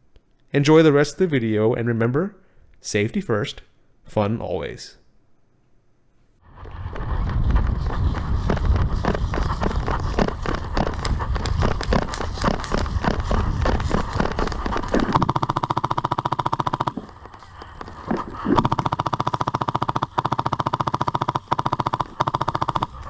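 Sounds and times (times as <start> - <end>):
airsoft rifle full-auto burst: 8.5 - 23.0.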